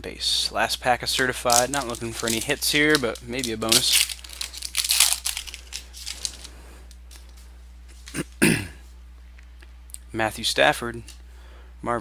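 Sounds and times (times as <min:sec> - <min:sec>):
steady low hum: 0:00.0 - 0:12.0
foil wrapper crinkling: 0:01.0 - 0:07.3.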